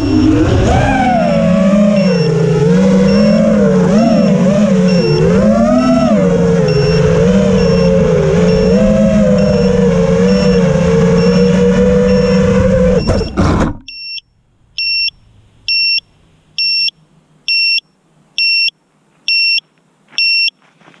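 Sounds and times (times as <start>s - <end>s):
two-tone electronic beep: 0.0s - 0.5s, 1.9s - 2.4s, 3.0s - 5.3s, 6.7s - 19.6s, 20.2s - 20.6s
drone motors whirring: 0.0s - 14.0s.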